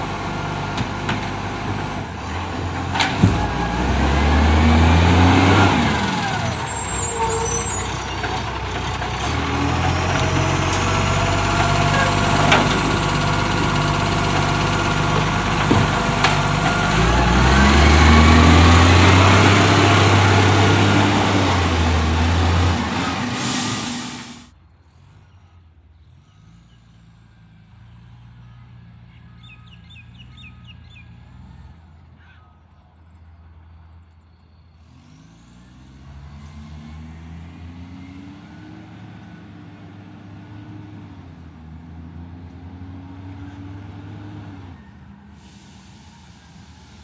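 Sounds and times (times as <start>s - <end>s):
truck engine revving: 0.0s - 24.5s.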